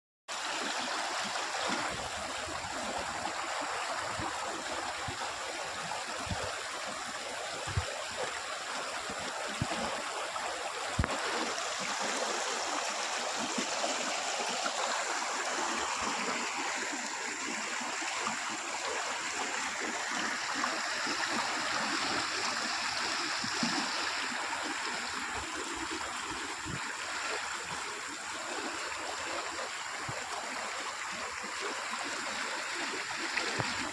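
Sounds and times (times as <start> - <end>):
water rushing and trickling: 0.3 - 33.9.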